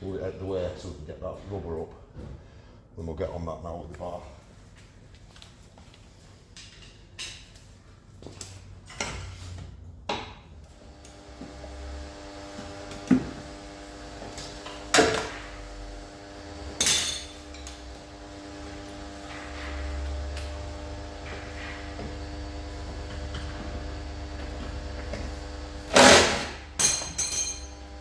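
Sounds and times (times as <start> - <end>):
electrical hum: 10.7 - 28.0
pry bar clanking on metal: 26.8 - 27.8.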